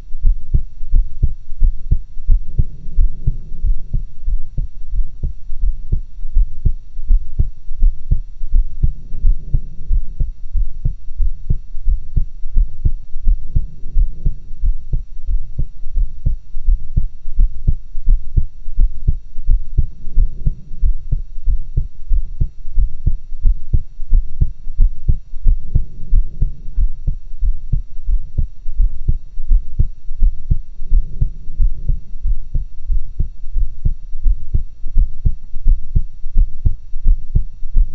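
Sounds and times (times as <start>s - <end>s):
heartbeat through stethoscope: 0.0s - 37.9s
soft swell of noise: 2.1s - 5.5s, 8.3s - 15.9s, 24.0s - 33.5s.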